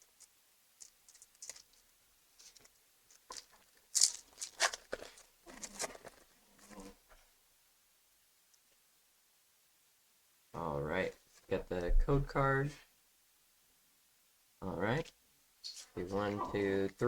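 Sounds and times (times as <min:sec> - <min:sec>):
foil wrapper tearing and crinkling: 0:00.8 - 0:01.8, 0:02.4 - 0:06.3.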